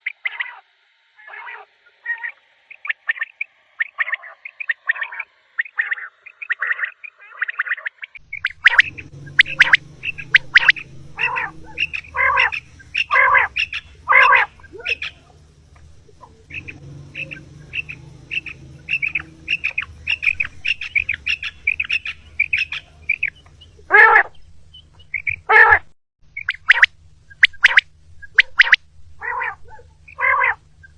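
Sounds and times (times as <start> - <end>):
quail calls: 1.2 - 25.8, 26.4 - 30.9
low steady hum: 8.2 - 25.6, 26.2 - 30.9.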